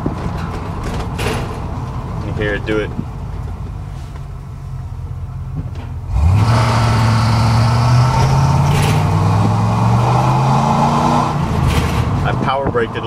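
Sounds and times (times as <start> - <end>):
truck engine revving: 4.9 - 13.0
rough grinding noise: 6.1 - 12.7.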